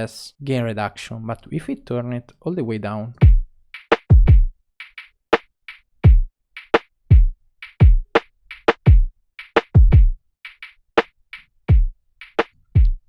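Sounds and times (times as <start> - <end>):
deep kick drum: 3.2 - 3.4, 4.1 - 4.5, 6.0 - 6.3, 7.1 - 8.1, 8.8 - 9.1, 9.8 - 10.2, 11.7 - 11.9, 12.8 - 13.0
hi-hat ticks: 3.2 - 5.1, 6.6 - 6.8, 7.6 - 13.0
sharp snare drum: 3.2 - 5.1, 6.0 - 10.8, 11.7 - 13.0.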